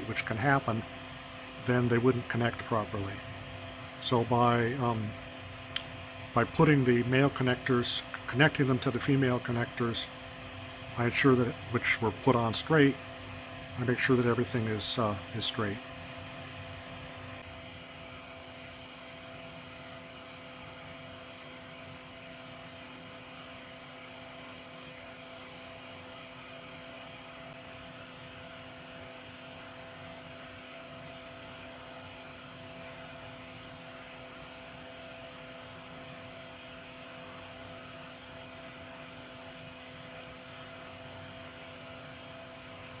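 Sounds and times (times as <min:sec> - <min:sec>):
extractor fan humming: 0:00.0 - 0:43.0.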